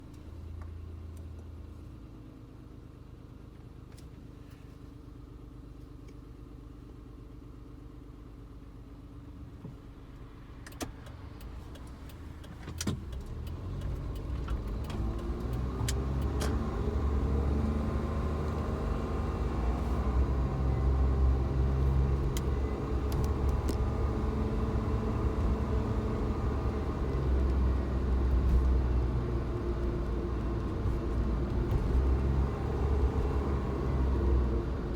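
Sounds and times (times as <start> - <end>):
car accelerating: 11.8 - 34.9.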